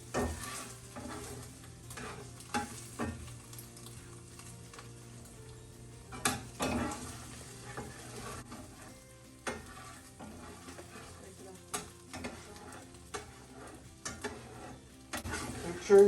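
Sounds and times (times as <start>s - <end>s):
utensil stirring and scraping: 0.0s - 5.4s, 6.0s - 16.0s
vegetables sizzling in a pan: 0.0s - 16.0s.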